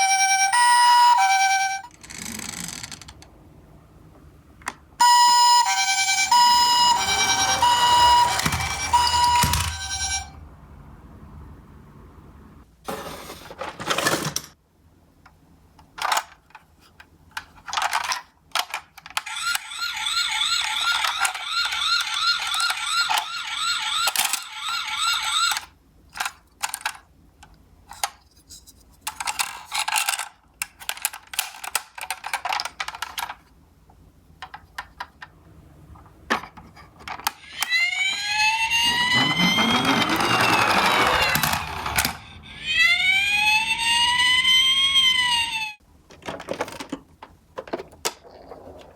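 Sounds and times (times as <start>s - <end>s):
warbling electronic toy siren: 0.0s - 1.9s, 5.0s - 10.4s, 19.3s - 25.7s, 37.3s - 45.8s
rising wail siren: 5.0s - 10.4s, 37.4s - 45.8s
toy cars clicking and knocking: 15.8s - 27.0s, 29.0s - 33.5s, 37.0s - 42.9s.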